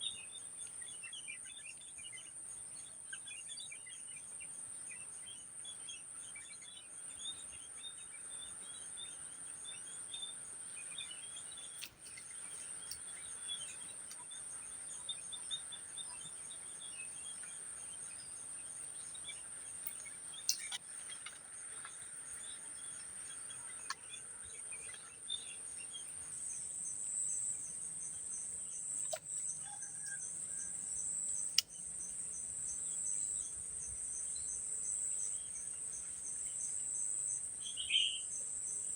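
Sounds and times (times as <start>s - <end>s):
insects droning: 0.0s - 38.9s
birds chirping: 10.8s - 33.6s.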